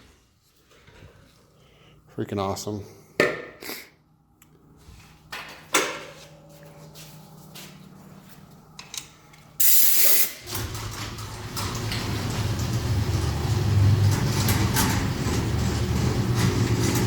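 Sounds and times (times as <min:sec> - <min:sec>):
compressed air blast: 0:09.6 - 0:10.4.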